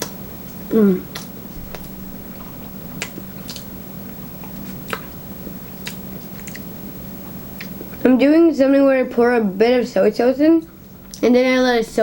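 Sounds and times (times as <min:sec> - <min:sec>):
chewing with wet mouth clicks: 0:00.0 - 0:03.7, 0:04.4 - 0:08.0
steady low hum: 0:00.0 - 0:12.0.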